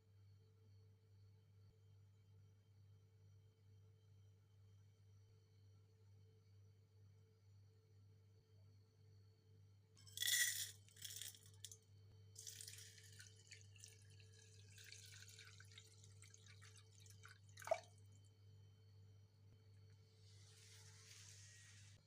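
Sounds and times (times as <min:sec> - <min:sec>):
glass clink: 0:10.1 - 0:11.8
liquid pouring and splashing: 0:12.4 - 0:18.0.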